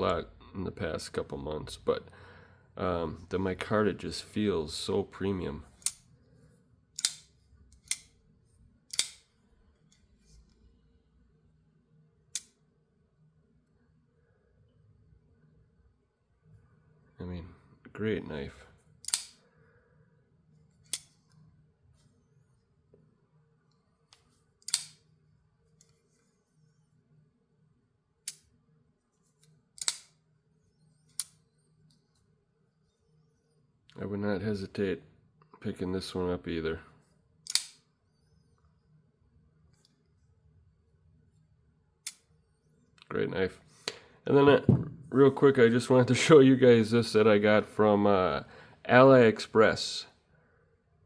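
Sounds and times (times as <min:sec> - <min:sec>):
folding knife clicking open and shut: 0:05.8 - 0:06.0, 0:07.0 - 0:08.2, 0:08.9 - 0:09.3, 0:12.4 - 0:12.6, 0:19.0 - 0:19.4, 0:20.9 - 0:21.2, 0:24.6 - 0:25.0, 0:29.8 - 0:30.1, 0:37.4 - 0:37.8.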